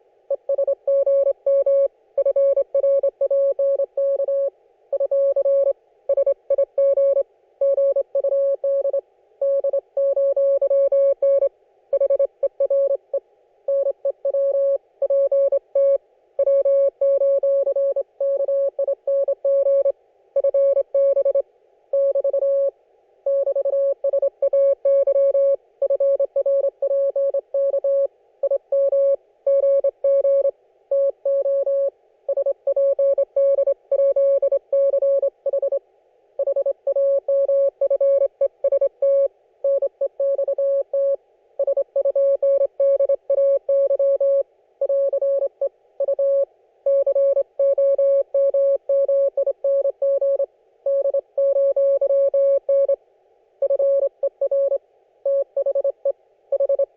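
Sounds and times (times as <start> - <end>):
morse code beeps: 56.6 - 56.9.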